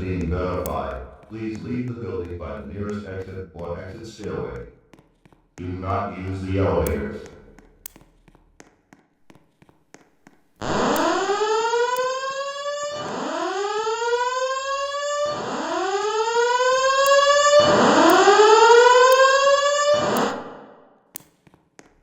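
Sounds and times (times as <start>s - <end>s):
recorded evacuation message: 0.0s - 4.8s, 5.6s - 7.6s, 10.6s - 14.5s, 15.2s - 20.4s
fire alarm whoop tone: 10.6s - 20.8s.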